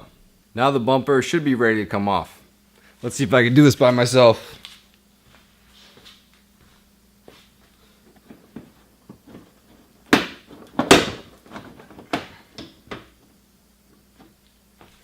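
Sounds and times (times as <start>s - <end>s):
plastic bumper knocking and rattling: 10.1s - 13.1s.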